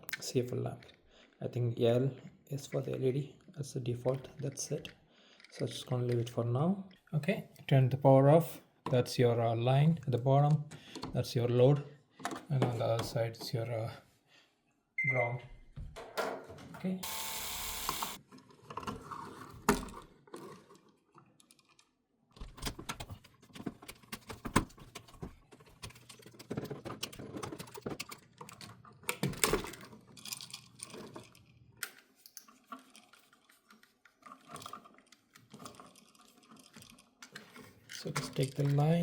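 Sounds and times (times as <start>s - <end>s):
wires being handled: 22.7s - 39.0s.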